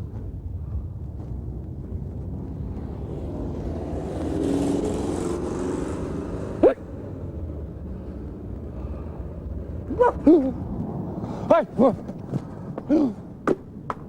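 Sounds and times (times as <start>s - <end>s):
street traffic rumble: 0.0s - 14.0s
vehicle passing: 0.0s - 14.0s
short rising vocal sound: 2.8s - 7.2s.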